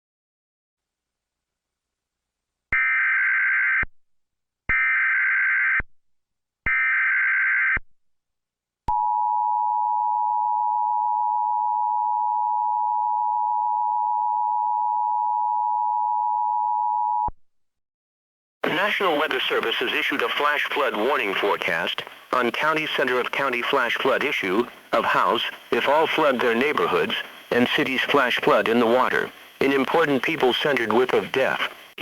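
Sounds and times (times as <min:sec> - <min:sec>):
digital data bursts: 0:18.7 - 0:32.0.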